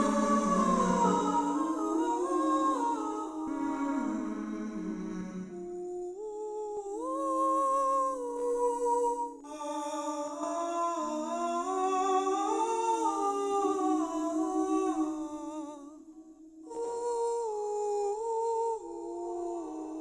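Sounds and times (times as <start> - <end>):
sustained humming tones in harmony: 0.0 - 6.2.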